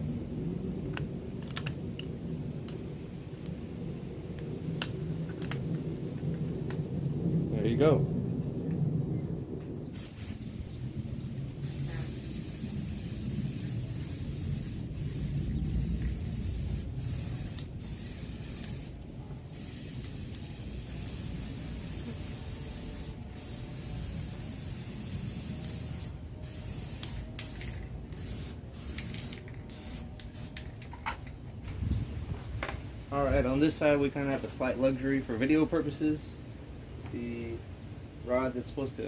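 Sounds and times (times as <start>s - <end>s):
wind rumble on microphone: 0.0s - 26.5s, 31.0s - 38.3s
spray paint can hissing: 9.9s - 10.5s, 11.5s - 30.9s.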